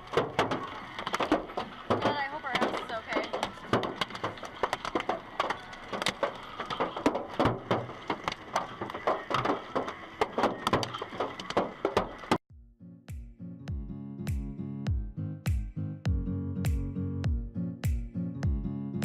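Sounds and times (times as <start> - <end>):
hailstones clattering on hard surface: 0.0 - 12.4.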